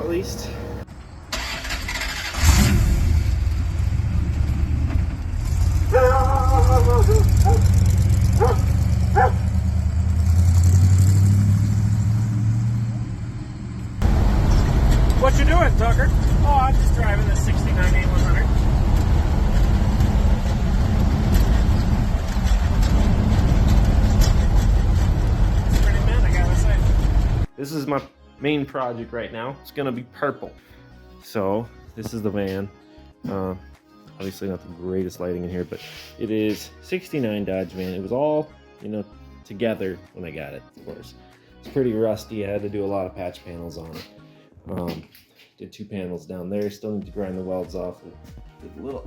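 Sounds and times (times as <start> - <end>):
van engine running: 2.4 - 27.5.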